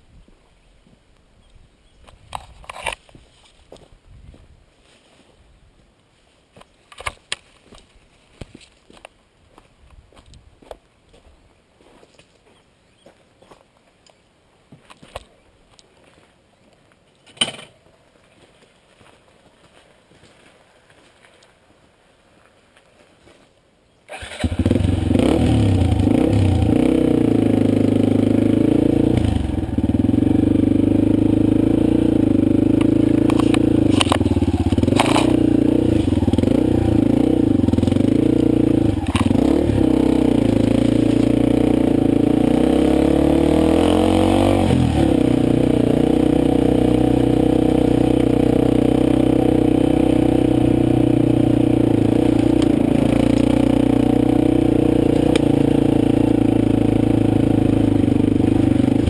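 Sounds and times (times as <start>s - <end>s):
motorcycle engine revving: 24.1s - 59.0s.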